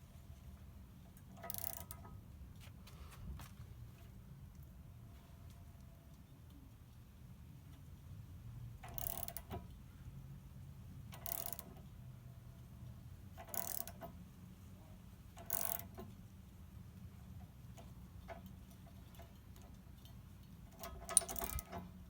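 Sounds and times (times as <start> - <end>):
socket wrench ratcheting clicks: 1.2 - 2.1, 8.8 - 9.7, 11.1 - 11.9, 13.4 - 14.1, 15.4 - 16.1, 20.7 - 21.9.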